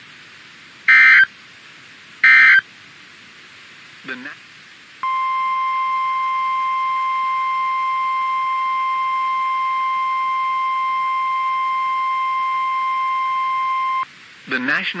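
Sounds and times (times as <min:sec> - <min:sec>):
steady warning alarm tone: 0:00.9 - 0:01.3, 0:02.2 - 0:02.6, 0:05.0 - 0:14.0.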